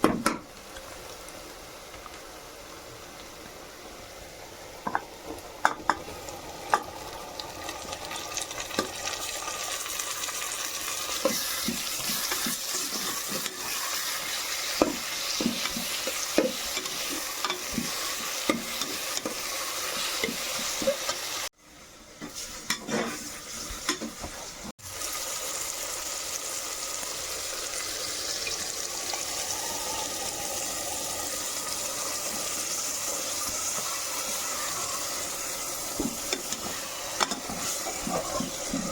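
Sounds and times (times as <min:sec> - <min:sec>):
curry sizzling in a pan: 0:00.4 - 0:38.9
metal spoon scraping a pan: 0:11.1 - 0:21.4, 0:22.7 - 0:23.3, 0:36.0 - 0:38.9.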